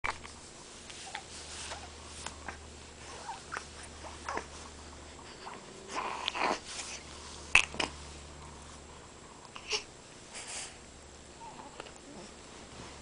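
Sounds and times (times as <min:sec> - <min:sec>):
baby grunting and squeaking: 0:06.0 - 0:06.7.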